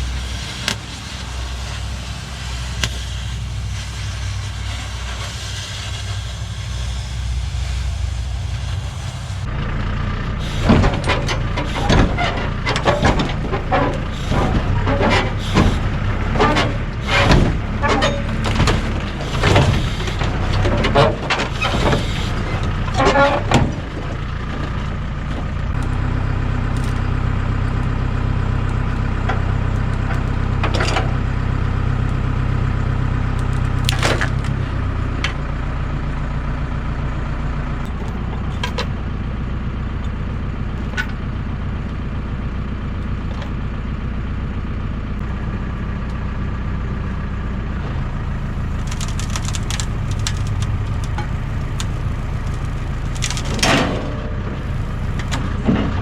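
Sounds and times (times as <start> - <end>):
engine idling: 0.0 - 56.0
sharp cracks: 48.5 - 53.8.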